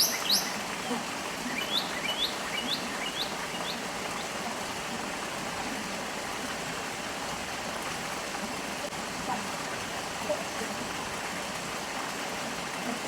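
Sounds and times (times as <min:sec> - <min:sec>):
small bird chirping: 0:00.0 - 0:00.6, 0:01.5 - 0:03.8
stream water flowing: 0:00.0 - 0:13.0.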